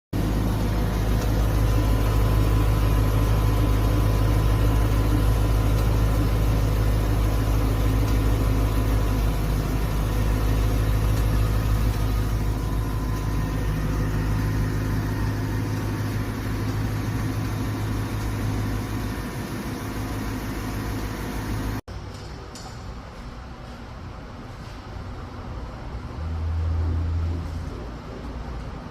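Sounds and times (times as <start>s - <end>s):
car engine running: 0.2s - 21.8s
engine ticking noise: 0.2s - 21.8s.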